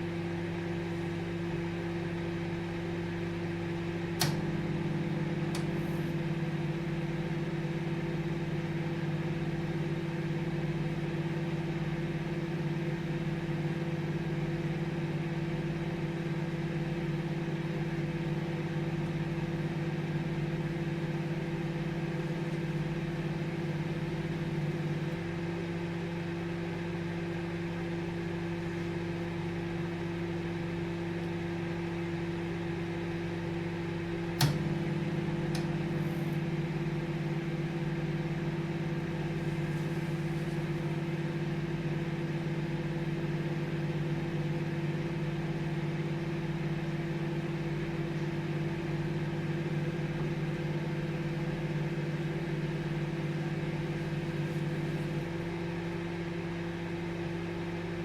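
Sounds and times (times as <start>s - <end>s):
microwave oven humming: 0.0s - 58.0s
sharp click: 4.2s - 4.4s, 34.4s - 34.7s.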